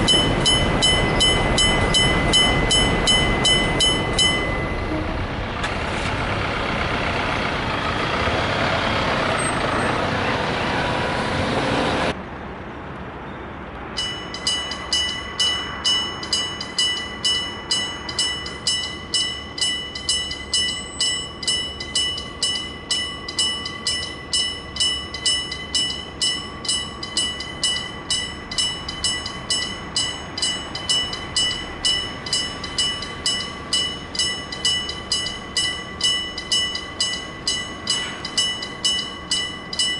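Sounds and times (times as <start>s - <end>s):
level-crossing bell: 0.0s - 5.0s, 14.0s - 39.9s
train rail noise: 0.0s - 12.2s, 13.8s - 39.9s.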